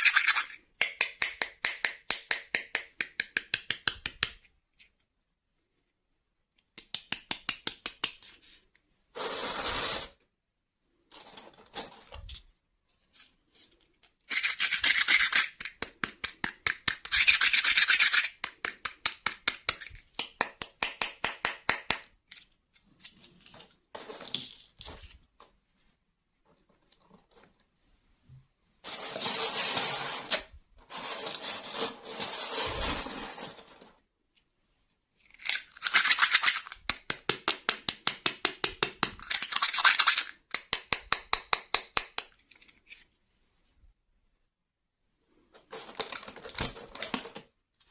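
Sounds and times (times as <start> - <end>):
plastic rubbing and scraping: 8.3 - 10.2, 28.8 - 34.0.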